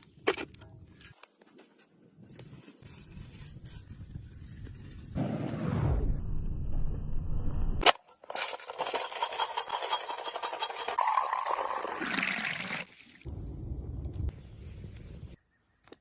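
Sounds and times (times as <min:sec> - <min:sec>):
low rumble: 0:04.4 - 0:07.8, 0:13.3 - 0:14.7
liquid pouring and splashing: 0:10.9 - 0:13.3.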